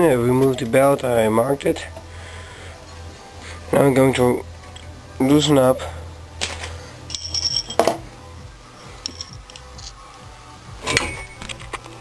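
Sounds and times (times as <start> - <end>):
metal hand tools clinking: 6.4 - 8.0, 9.0 - 10.0.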